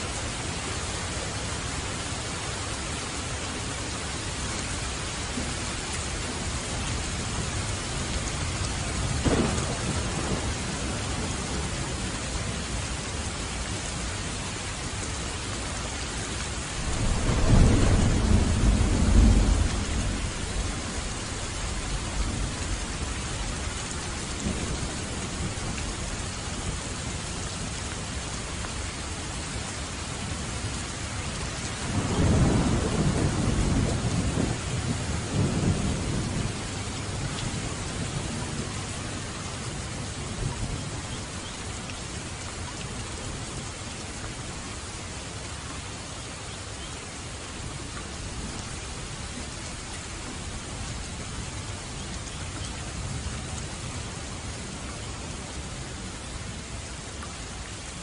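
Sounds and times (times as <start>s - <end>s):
heavy rain: 0.0s - 58.0s
rolling thunder rumble: 6.4s - 12.9s, 16.8s - 27.2s, 31.7s - 40.9s
thunder crack: 9.2s - 10.6s.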